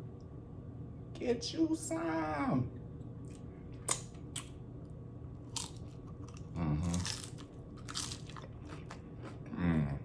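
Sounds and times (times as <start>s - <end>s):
chips crunching: 5.4s - 9.5s
person humming mm: 6.6s - 7.1s.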